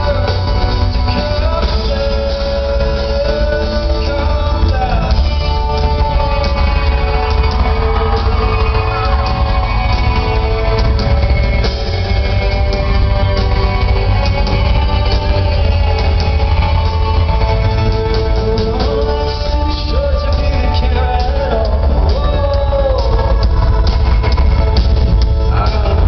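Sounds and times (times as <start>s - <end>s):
live rock band: 0.0s - 26.0s
man singing: 0.0s - 26.0s
crowd shouting: 4.4s - 20.1s.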